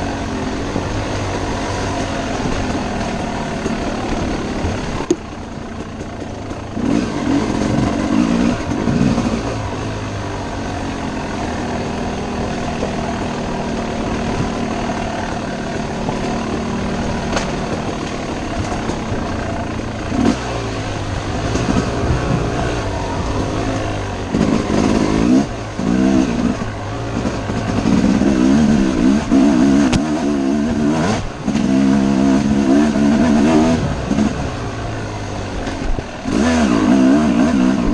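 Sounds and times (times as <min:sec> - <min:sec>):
dirt bike engine revving: 0:00.0 - 0:37.9.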